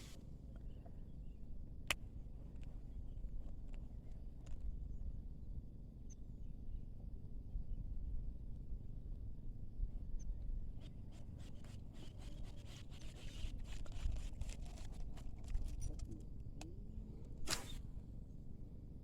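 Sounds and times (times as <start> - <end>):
short sharp rasp: 10.8 - 15.9, 17.4 - 17.8
light clicks and scrapes: 10.8 - 17.9.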